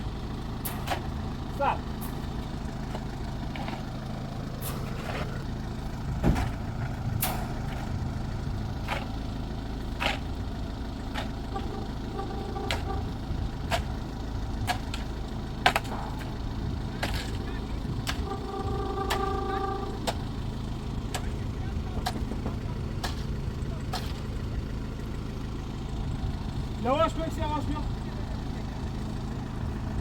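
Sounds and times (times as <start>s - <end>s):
heavy engine running: 0.0s - 30.0s.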